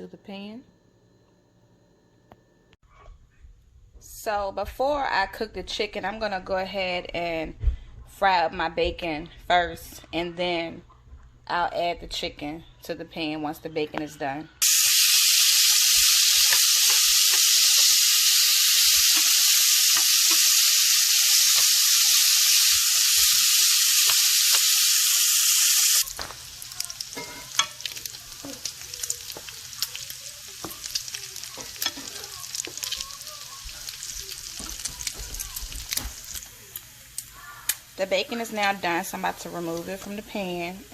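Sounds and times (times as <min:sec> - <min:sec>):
bacon sizzling in a pan: 0:14.6 - 0:40.9
fat popping and crackling: 0:26.0 - 0:37.8.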